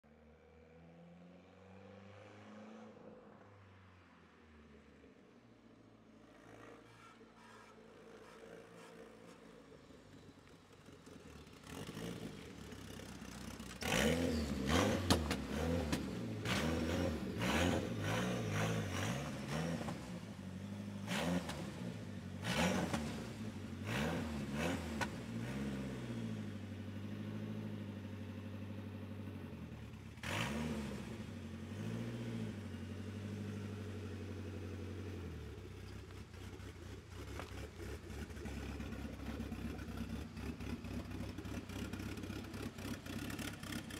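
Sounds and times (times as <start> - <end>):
car engine revving: 11.6 - 27.1, 30.2 - 35.1.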